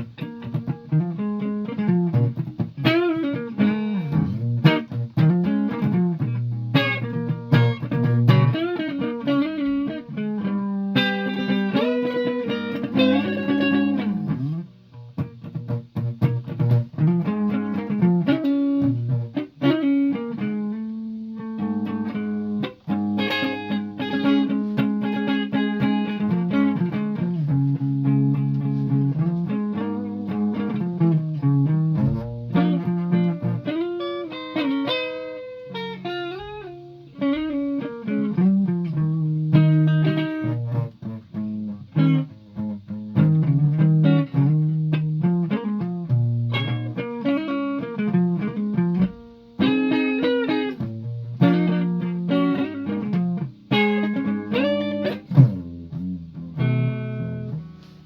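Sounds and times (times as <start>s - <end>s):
guitar plucked notes: 0.0s - 58.0s.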